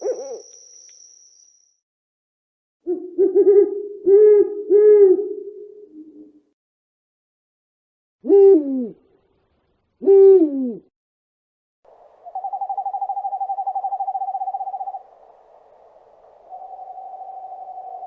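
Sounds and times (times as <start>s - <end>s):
owl hooting: 0.0s - 0.6s, 2.9s - 6.3s, 12.2s - 18.0s
owl trill: 0.0s - 1.6s, 11.9s - 18.0s.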